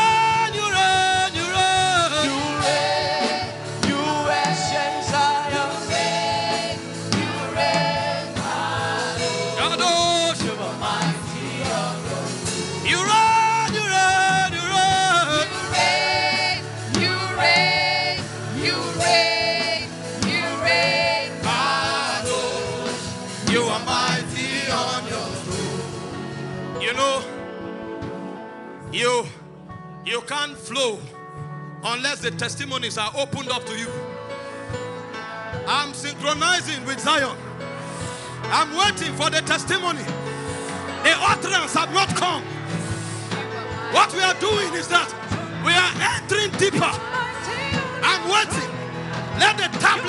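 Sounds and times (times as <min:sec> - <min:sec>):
instrumental accompaniment: 0:00.0 - 0:50.0
voices singing long notes: 0:02.2 - 0:26.2.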